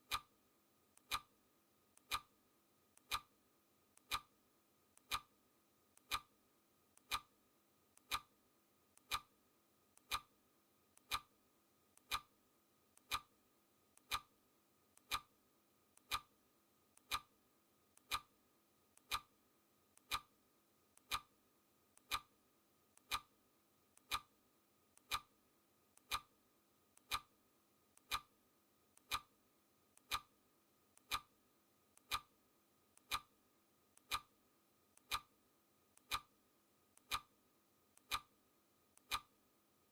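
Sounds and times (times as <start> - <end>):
clock ticking: 0.1 - 0.3, 1.0 - 1.3, 2.0 - 2.3, 3.0 - 3.3, 4.0 - 4.3, 5.0 - 5.3, 6.0 - 6.3, 7.0 - 7.3, 8.0 - 8.3, 9.0 - 9.3, 10.0 - 10.3, 11.0 - 11.3, 12.0 - 12.3, 13.0 - 13.3, 14.0 - 14.3, 15.0 - 15.3, 16.0 - 16.3, 17.0 - 17.3, 18.0 - 18.3, 19.0 - 19.3, 20.0 - 20.3, 21.0 - 21.3, 22.0 - 22.3, 23.0 - 23.3, 24.0 - 24.3, 25.0 - 25.3, 26.0 - 26.3, 27.0 - 27.3, 28.0 - 28.3, 29.0 - 29.3, 30.0 - 30.3, 31.0 - 31.3, 32.0 - 32.3, 33.0 - 33.3, 34.0 - 34.3, 35.0 - 35.3, 36.0 - 36.3, 37.0 - 37.3, 38.0 - 38.3, 39.0 - 39.3.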